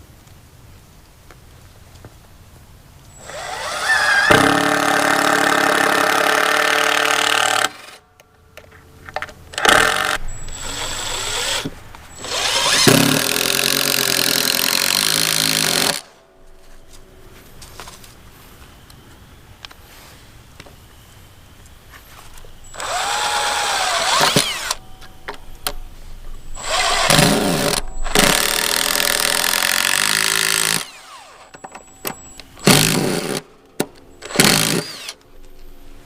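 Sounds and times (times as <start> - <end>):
power drill driving screws into wood: 3.2 - 8.0, 9.6 - 16.1, 22.7 - 24.8, 26.6 - 31.6, 32.6 - 33.4, 34.2 - 35.2.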